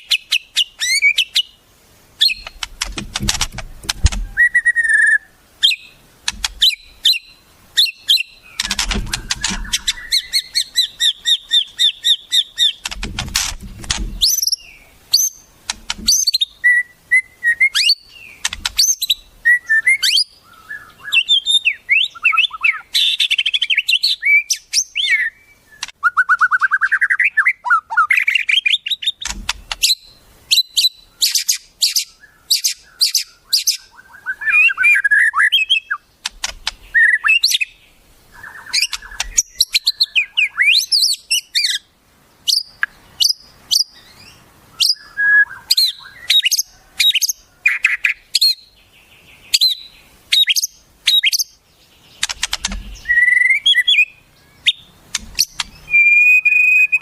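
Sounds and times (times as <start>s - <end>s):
songbird chirps and trills: 0.0s - 57.0s.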